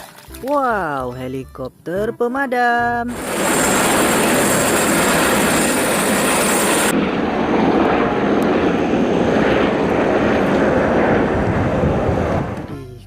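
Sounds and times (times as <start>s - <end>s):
helicopter rotor and engine: 3.1s - 12.7s
high whine: 3.1s - 13.0s.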